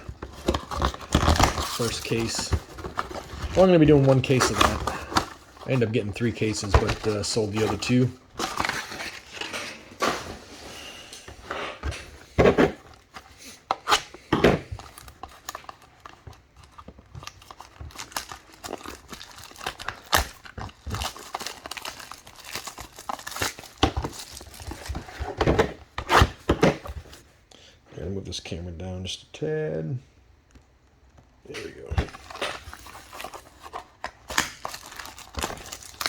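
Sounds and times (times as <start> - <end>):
plastic wrap crinkling and tearing: 0.0 - 9.5, 14.6 - 25.4, 32.1 - 36.0.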